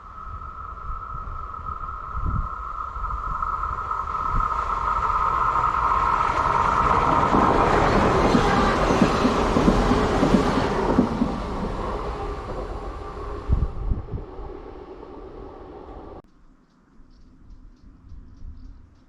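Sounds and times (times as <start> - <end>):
passenger train passing: 0.0 - 16.2
steady whine: 0.0 - 16.2
train wheels clattering: 5.8 - 13.2.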